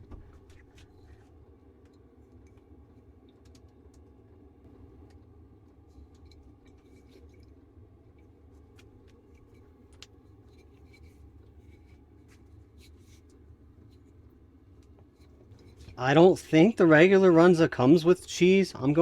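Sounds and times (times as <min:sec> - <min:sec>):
faint clicks and taps: 0:00.0 - 0:04.2, 0:08.2 - 0:14.1, 0:14.7 - 0:16.0
steady low hum: 0:00.0 - 0:19.0.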